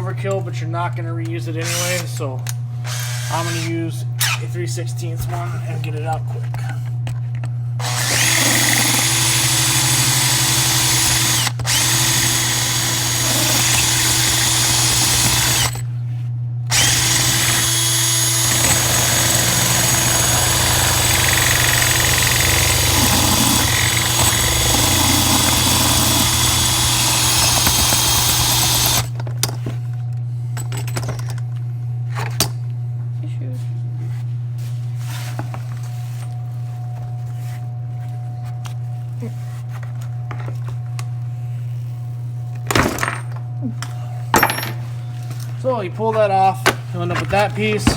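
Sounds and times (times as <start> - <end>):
power drill drilling metal: 1.6 - 2.1, 2.9 - 4.4, 7.8 - 15.8, 16.7 - 29.2.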